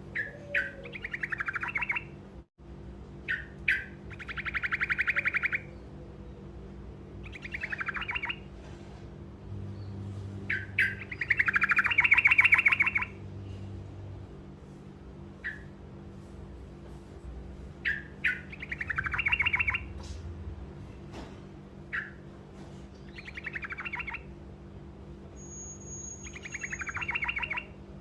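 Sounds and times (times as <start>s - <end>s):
finch singing rolled trills: 0.0s - 2.2s, 3.2s - 6.5s, 7.2s - 8.5s, 9.7s - 13.2s, 17.8s - 20.0s, 21.9s - 22.2s, 23.0s - 24.3s, 25.4s - 27.8s
low steady hum: 0.0s - 28.0s.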